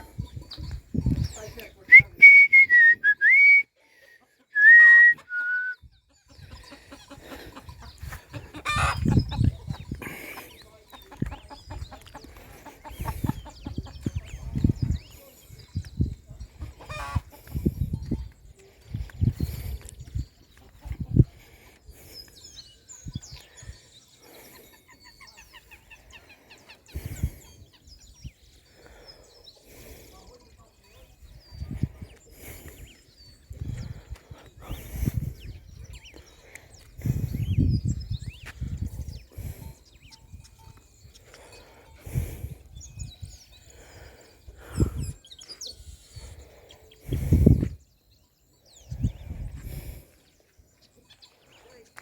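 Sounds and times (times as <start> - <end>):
small birds chirping: 0.0 - 1.9, 5.8 - 52.0
whistled notes: 1.9 - 3.7, 4.6 - 5.8.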